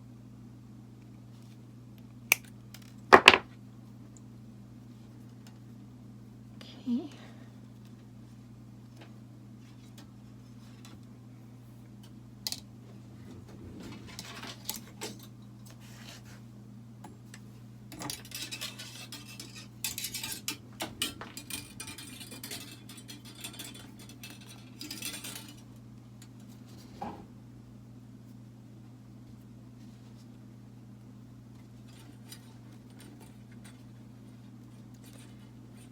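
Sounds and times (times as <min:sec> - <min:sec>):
metal wire clinking and scraping: 0:17.9 - 0:26.5, 0:31.6 - 0:35.9.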